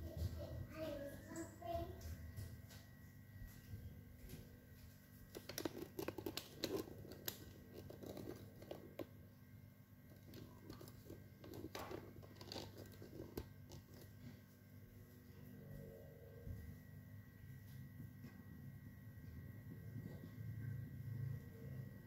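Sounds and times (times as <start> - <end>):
faint crinkling and rustling: 0.0 - 9.2, 10.0 - 15.6.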